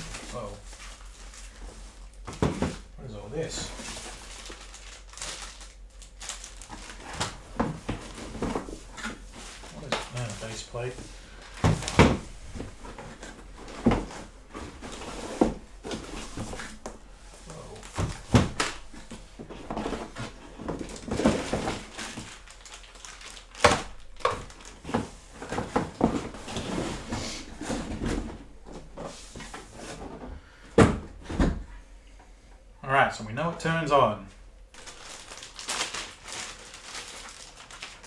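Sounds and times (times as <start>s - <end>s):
packaging rustling: 0.0s - 30.0s, 34.7s - 38.0s.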